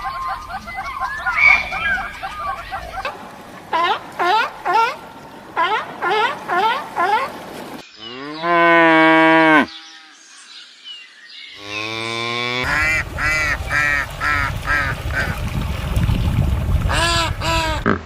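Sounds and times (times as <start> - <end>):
waterfowl honking calls: 0.0 - 7.7, 11.9 - 15.4, 16.9 - 18.0
cow mooing: 11.6 - 12.8.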